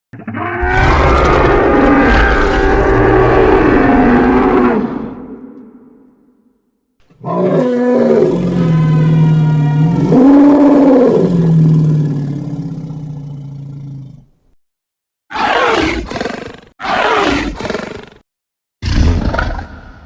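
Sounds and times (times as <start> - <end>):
synthetic dinosaur roars: 0.2 - 5.4, 7.2 - 14.2, 15.3 - 18.2.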